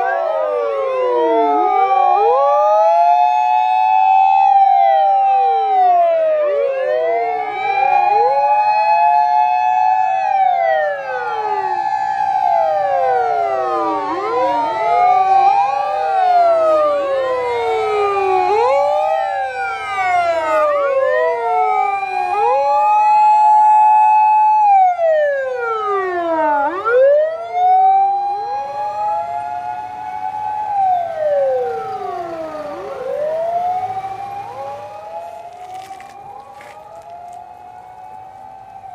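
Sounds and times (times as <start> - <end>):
steady siren tone: 0.0 - 38.9
wailing sirens: 0.0 - 38.9.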